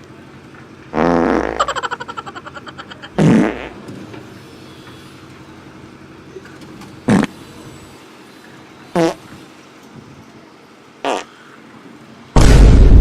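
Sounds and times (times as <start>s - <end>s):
fart noises: 0.9s - 2.0s, 3.1s - 3.8s, 7.1s - 7.4s, 9.0s - 9.3s, 11.0s - 11.4s.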